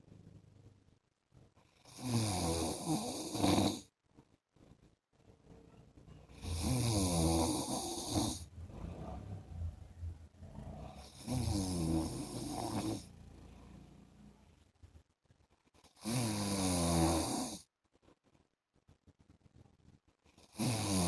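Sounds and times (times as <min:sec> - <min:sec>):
man snoring: 0:01.8 - 0:03.9, 0:06.4 - 0:09.0, 0:10.5 - 0:13.1, 0:16.0 - 0:17.6, 0:20.5 - 0:21.0.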